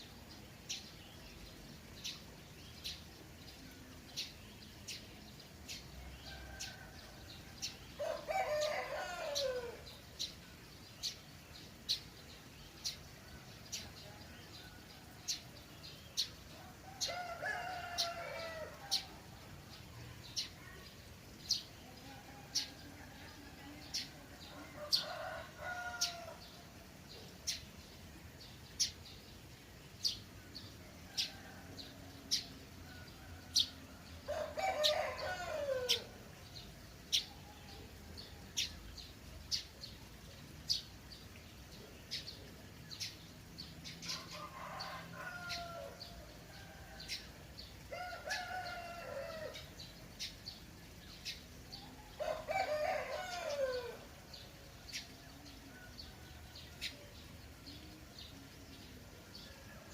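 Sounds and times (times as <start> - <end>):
rooster crowing: 8.0 - 9.8, 16.8 - 19.0, 33.0 - 36.1, 44.1 - 47.1, 47.9 - 49.6, 52.1 - 54.0.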